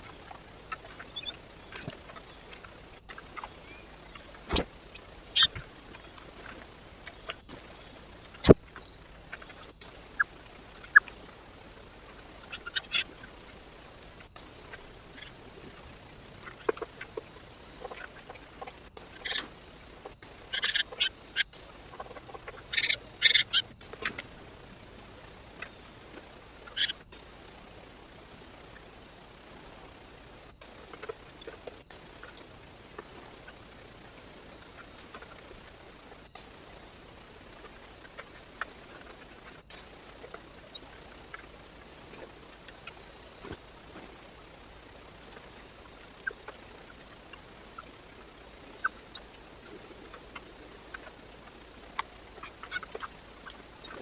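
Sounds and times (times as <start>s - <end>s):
steady background hiss: 0.0s - 54.0s.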